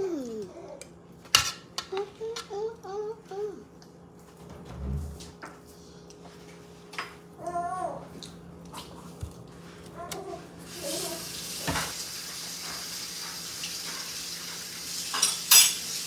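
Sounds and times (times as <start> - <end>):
tap water running: 10.2 - 16.0.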